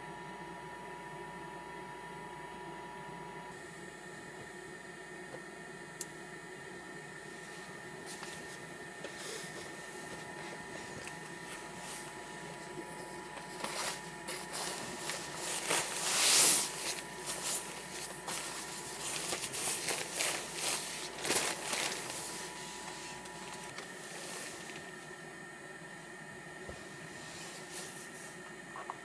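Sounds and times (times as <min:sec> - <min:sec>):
faint high hum: 0:00.0 - 0:29.0
objects rustling and scraping: 0:07.3 - 0:25.1.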